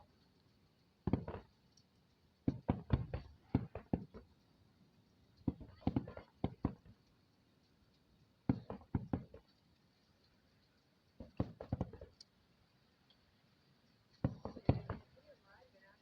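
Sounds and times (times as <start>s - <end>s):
distant fireworks bangs: 1.0s - 1.6s, 2.4s - 4.4s, 5.4s - 7.0s, 8.4s - 9.5s, 11.2s - 12.2s, 14.2s - 15.4s.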